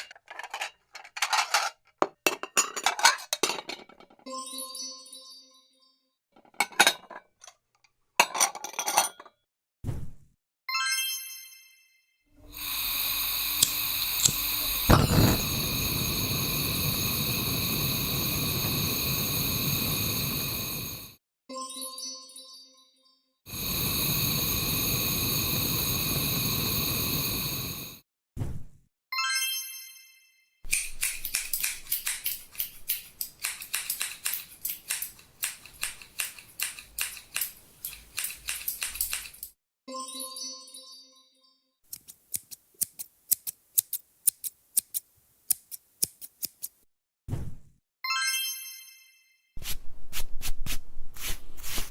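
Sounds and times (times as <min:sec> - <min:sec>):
appliance motor whining hiss: 0:12.4 - 0:21.2, 0:23.5 - 0:28.0
sharp clicks: 0:30.7 - 0:39.5.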